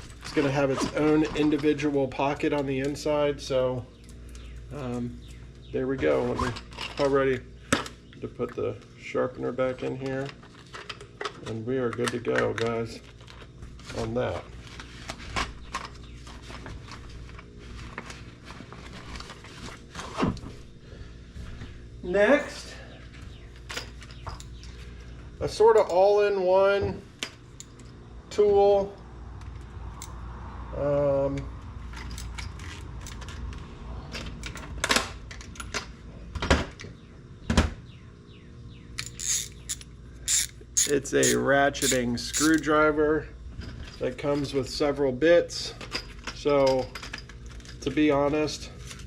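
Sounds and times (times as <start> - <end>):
screwdriver handling clicks and knocks: 39.0 - 42.6.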